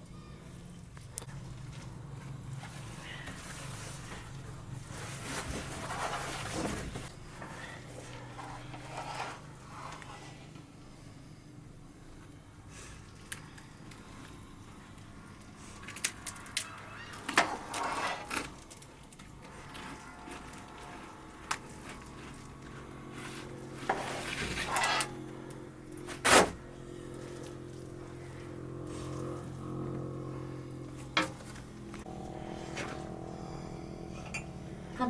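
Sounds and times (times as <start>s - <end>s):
low steady hum: 0.0s - 35.0s
scraping rustle: 2.5s - 10.5s, 17.1s - 18.7s, 19.5s - 25.2s.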